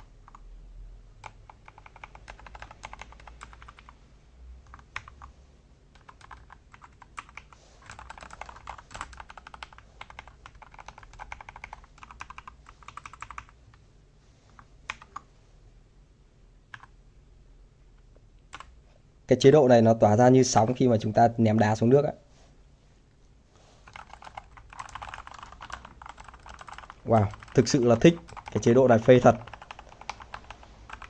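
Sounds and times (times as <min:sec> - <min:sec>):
mechanical keyboard typing: 0:01.2 - 0:04.0, 0:04.7 - 0:05.3, 0:06.0 - 0:13.6, 0:16.7 - 0:16.9, 0:23.8 - 0:31.0.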